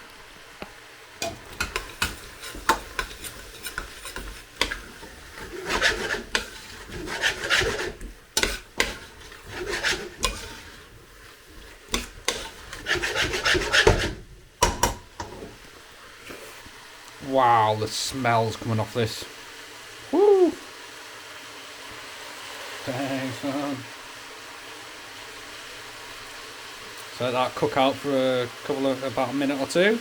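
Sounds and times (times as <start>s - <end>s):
spoon knocking against pan: 1.2s - 5.0s, 11.9s - 15.5s
spoon scraping food in a pan: 1.2s - 15.7s.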